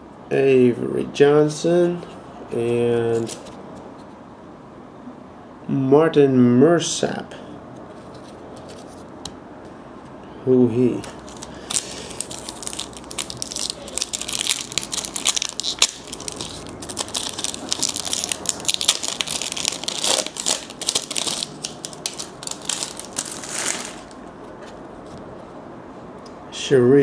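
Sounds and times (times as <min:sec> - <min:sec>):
plastic wrapper crinkling: 0:10.9 - 0:24.3.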